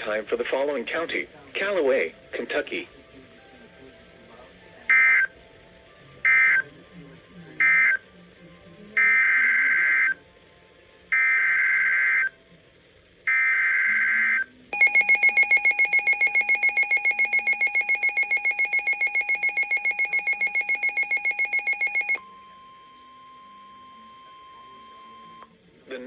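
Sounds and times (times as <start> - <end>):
rapid electronic alert beeps: 14.8 - 22.2
warbling digital data tones: 14.8 - 22.2.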